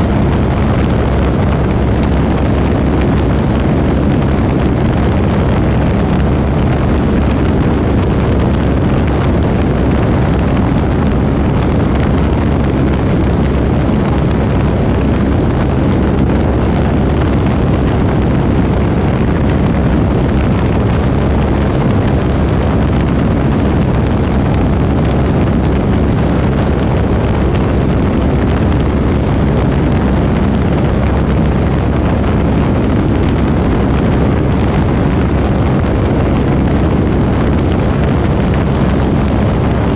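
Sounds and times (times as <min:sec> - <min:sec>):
propeller aircraft engine running: 0:00.0 - 0:39.9.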